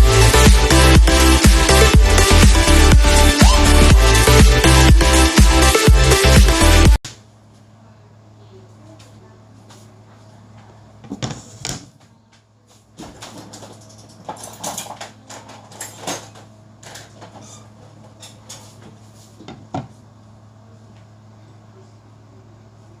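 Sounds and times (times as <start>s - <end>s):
kitchen things clattering: 13.0s - 18.8s.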